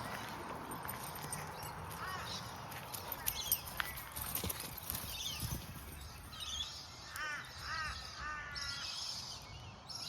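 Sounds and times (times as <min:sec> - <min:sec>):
crow cawing: 0:01.9 - 0:02.4, 0:07.0 - 0:09.0.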